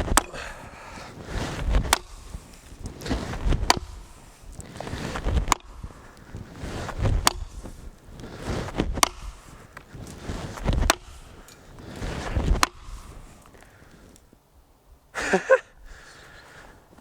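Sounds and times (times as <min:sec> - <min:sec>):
axe chopping into log: 0:00.0 - 0:00.4, 0:01.8 - 0:02.2, 0:03.6 - 0:04.0, 0:07.2 - 0:07.5, 0:08.9 - 0:09.4, 0:10.7 - 0:11.1, 0:12.5 - 0:12.9.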